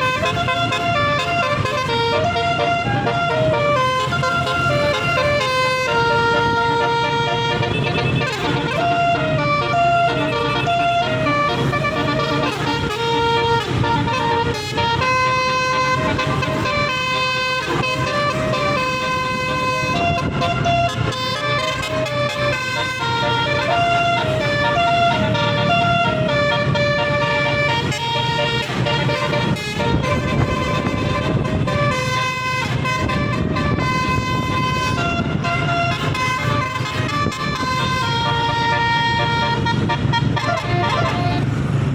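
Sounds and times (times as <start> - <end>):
multi-tone bus horn tune: 0.0 - 41.9.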